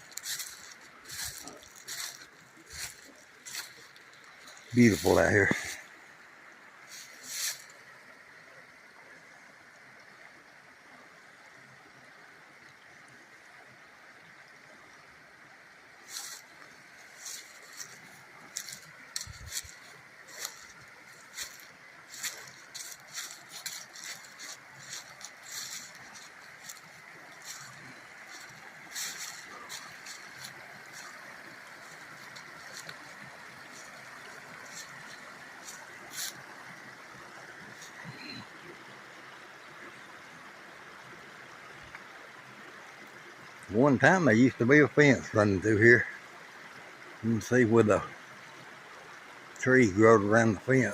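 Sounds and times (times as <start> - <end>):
footsteps crunching through dry leaves: 0.0 - 5.8, 6.9 - 7.7, 16.1 - 36.5
creek running: 0.0 - 50.9.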